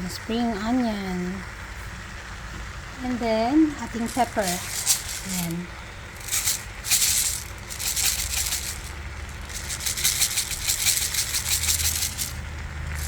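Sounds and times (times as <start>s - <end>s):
pepper grinder rattling clicks: 4.1s - 5.6s, 6.2s - 13.0s.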